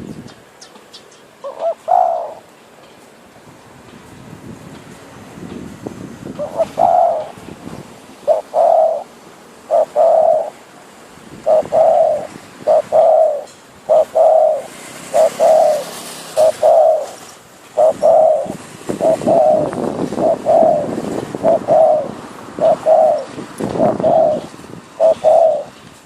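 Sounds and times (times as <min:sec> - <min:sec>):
dove cooing: 0:01.4 - 0:02.5, 0:06.4 - 0:07.4, 0:08.2 - 0:10.7, 0:11.4 - 0:25.8.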